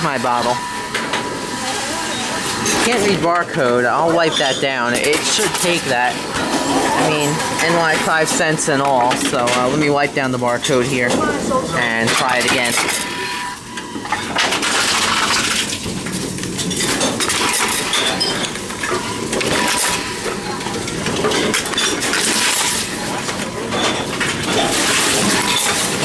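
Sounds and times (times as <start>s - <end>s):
cans and bottles clattering: 14.2s - 26.0s.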